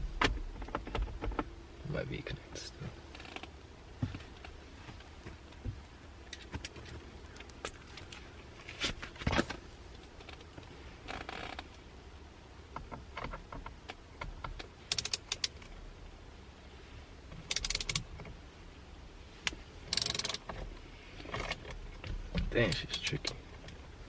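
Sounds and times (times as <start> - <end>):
hand ratchet clicking: 14.9 - 15.6, 17.5 - 18.0, 19.9 - 20.4.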